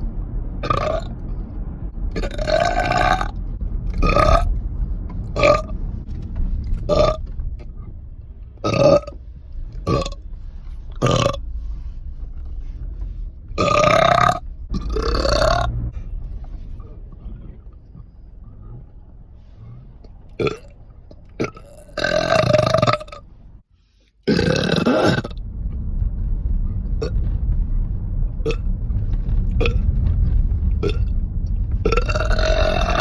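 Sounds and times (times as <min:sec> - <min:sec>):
person burping: 0:24.3 - 0:25.3.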